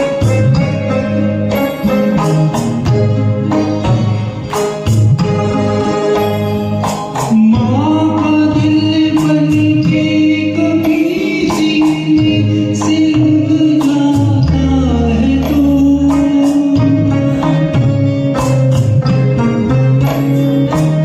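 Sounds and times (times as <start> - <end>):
bass line: 0.0 - 21.0
percussion beat: 0.0 - 21.0
person singing over backing track: 0.0 - 21.0.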